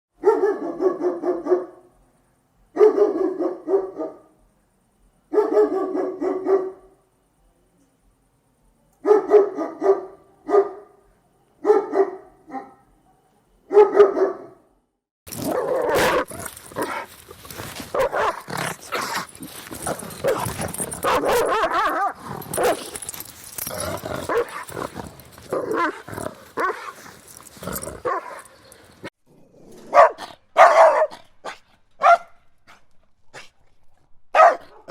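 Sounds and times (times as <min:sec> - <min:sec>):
dogs barking angrily: 0:00.2 - 0:01.8, 0:02.8 - 0:04.3, 0:05.4 - 0:06.8, 0:13.7 - 0:14.6, 0:15.3 - 0:29.1, 0:29.7 - 0:33.5, 0:34.3 - 0:34.9.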